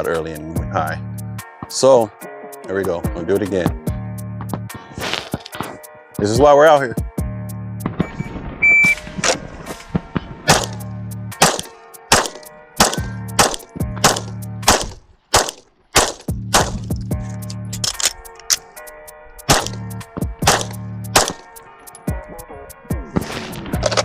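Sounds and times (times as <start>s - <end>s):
music: 0.0s - 24.0s
pistol shots: 10.5s - 16.9s, 19.5s - 19.8s, 20.4s - 21.5s
faint bullet impacts: 10.5s - 17.0s, 20.4s - 21.5s.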